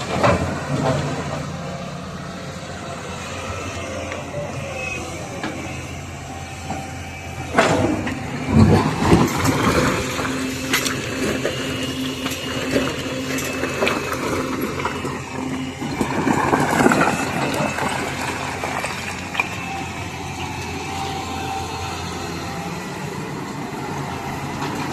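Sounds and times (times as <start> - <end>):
diesel engine running: 0.0 - 24.9
stones grinding against steel bucket: 8.4 - 19.6.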